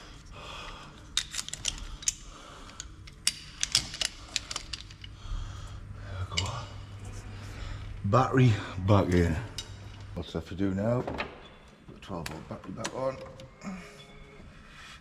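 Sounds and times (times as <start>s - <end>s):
low hum: 0.0s - 10.7s
metallic clicks of hand tools: 1.1s - 5.1s.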